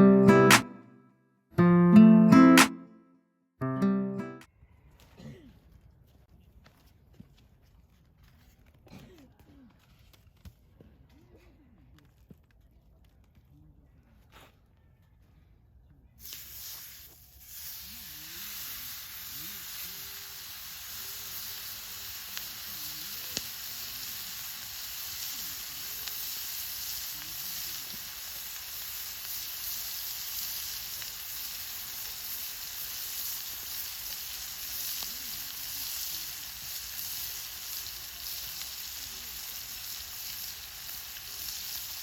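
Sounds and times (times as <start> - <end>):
food sizzling in a pan: 16.2 - 42.0.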